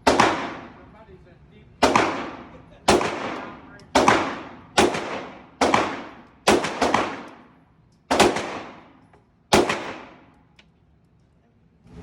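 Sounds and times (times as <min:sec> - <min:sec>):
gunshots with echo: 0:00.0 - 0:00.8, 0:01.8 - 0:07.5, 0:08.1 - 0:10.3.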